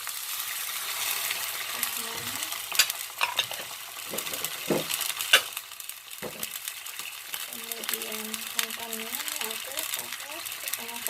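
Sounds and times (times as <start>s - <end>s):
vegetables sizzling in hot oil: 0.0s - 11.0s
spatula scraping and knocking pan: 2.1s - 5.5s.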